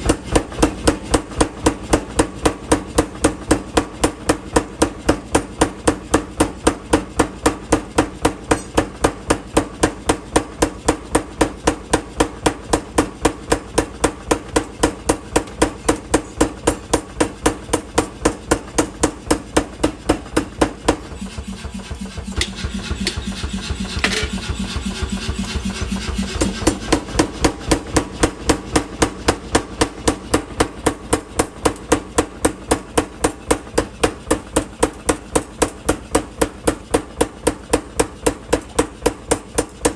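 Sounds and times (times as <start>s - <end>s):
power hammer pounding steel: 0.0s - 39.9s
low machine running: 13.9s - 32.8s.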